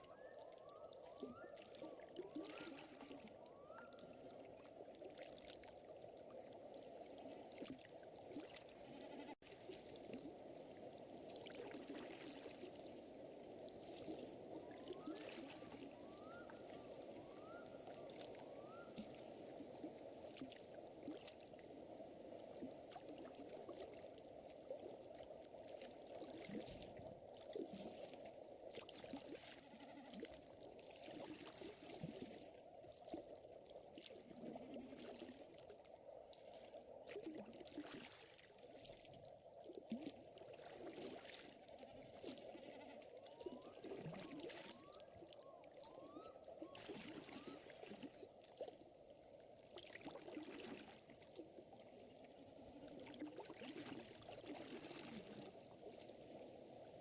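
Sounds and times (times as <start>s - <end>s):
rushing water: 39.9s - 49.0s, 49.6s - 57.0s.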